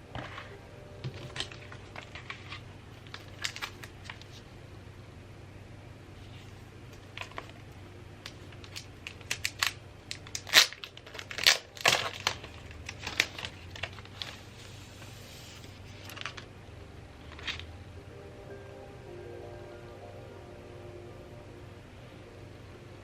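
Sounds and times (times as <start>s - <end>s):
packaging crinkling rustle: 0.2s - 4.5s, 6.2s - 16.5s.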